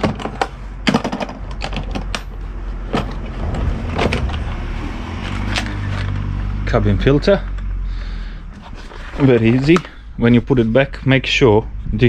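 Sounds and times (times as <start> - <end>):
steady low hum: 0.4 - 12.0.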